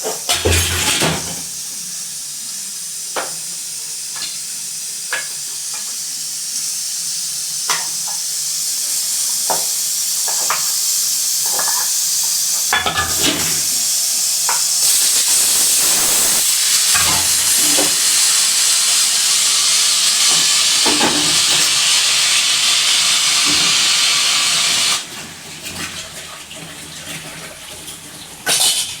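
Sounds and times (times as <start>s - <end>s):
pressure cooker whistle hissing: 0.4s - 25.1s.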